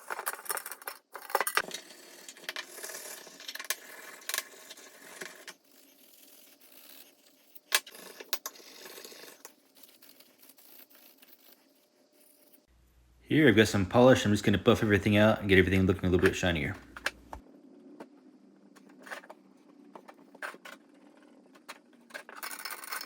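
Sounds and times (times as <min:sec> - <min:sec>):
small metal objects clinking: 0:00.0 - 0:04.6, 0:22.1 - 0:23.0.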